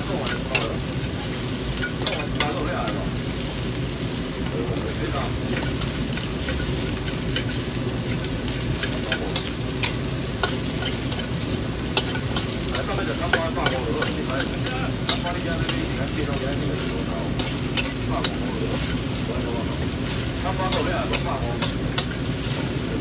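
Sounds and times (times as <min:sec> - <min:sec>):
food sizzling in a wok: 0:00.0 - 0:23.0
spatula clanking on wok: 0:00.1 - 0:03.0, 0:05.5 - 0:16.6, 0:17.2 - 0:19.0, 0:20.6 - 0:22.3.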